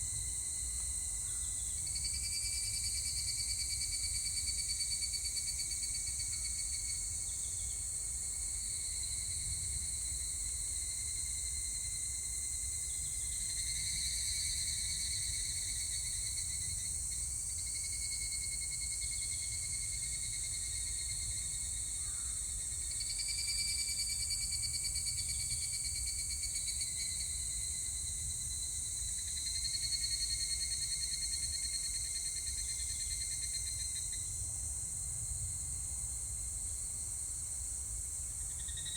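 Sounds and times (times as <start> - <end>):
high insect hiss: 0.0 - 38.9
cicadas singing: 38.4 - 38.9.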